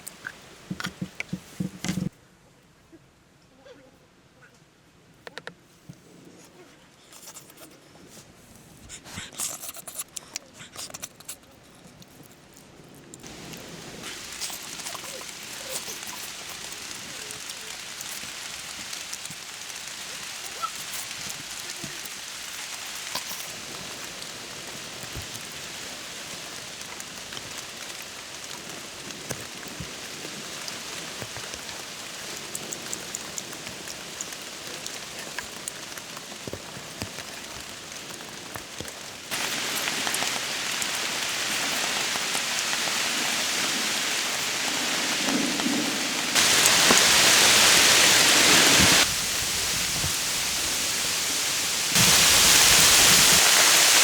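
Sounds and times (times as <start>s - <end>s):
raindrops ticking: 0.0s - 2.1s, 13.2s - 49.1s
steady rain: 0.0s - 2.1s, 13.1s - 54.0s.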